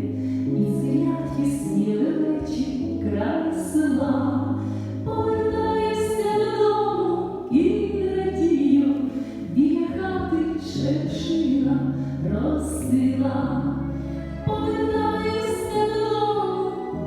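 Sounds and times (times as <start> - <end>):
woman singing with vibrato: 5.1 - 17.0
instrumental accompaniment: 11.9 - 17.0.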